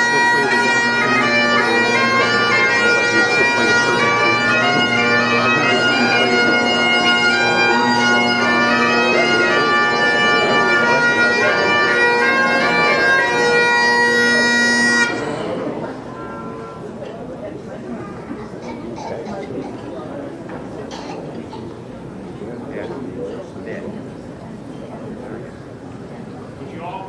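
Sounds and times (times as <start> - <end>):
bagpipes playing a tune: 0.0 - 16.9.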